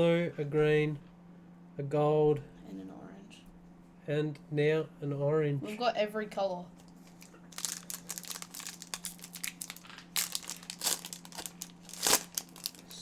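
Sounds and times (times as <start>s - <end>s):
wrapper crinkling: 7.1s - 13.0s.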